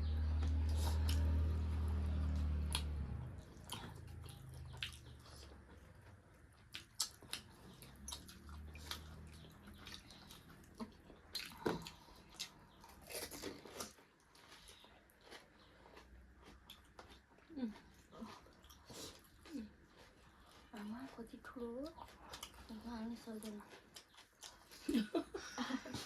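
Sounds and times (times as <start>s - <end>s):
low hum: 0.0s - 6.4s
chewing and crunching food: 0.0s - 26.0s.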